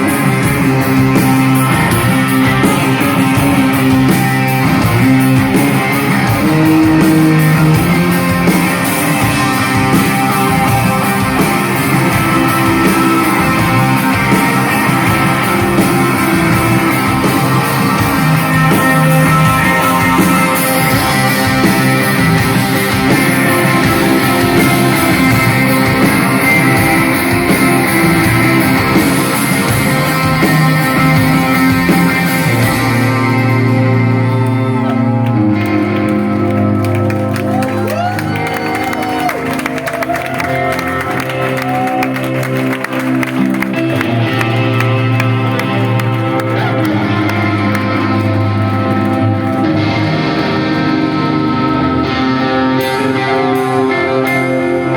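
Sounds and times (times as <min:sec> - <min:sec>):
drum kit beat: 0:00.0 - 0:34.8
guitar: 0:00.0 - 0:54.9.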